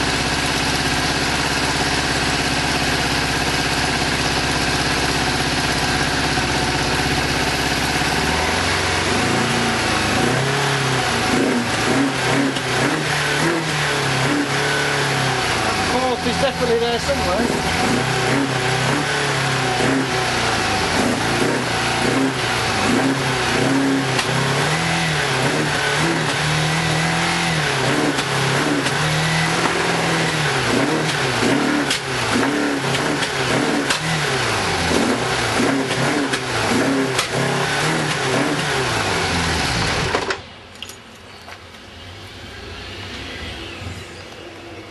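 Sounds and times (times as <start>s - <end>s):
motorcycle engine misfiring: 39.5s - 42.1s.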